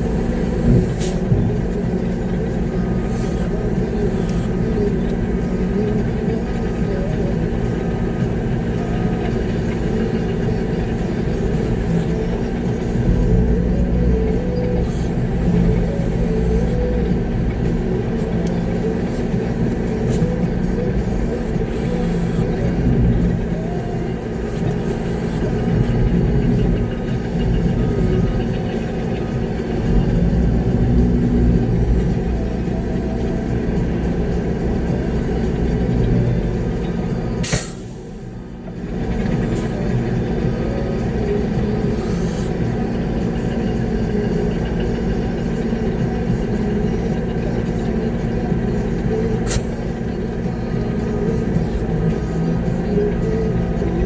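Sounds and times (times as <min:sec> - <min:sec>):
diesel engine running: 0:00.0 - 0:54.0
sharp click: 0:37.4 - 0:37.9, 0:49.5 - 0:49.9.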